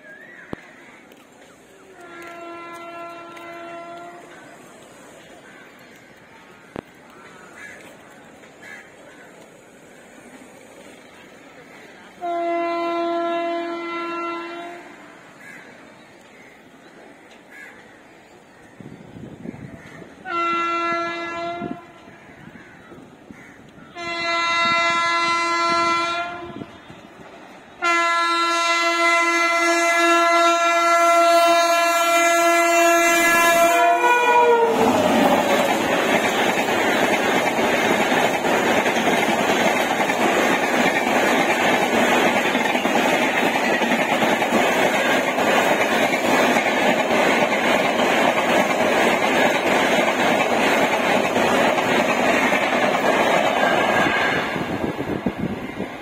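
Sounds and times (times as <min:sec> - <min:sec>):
train passing by: 0:00.0 - 0:56.0
locomotive horn blasts: 0:01.9 - 0:04.3, 0:12.2 - 0:15.0, 0:20.2 - 0:22.0, 0:24.0 - 0:35.1, 0:53.7 - 0:54.9.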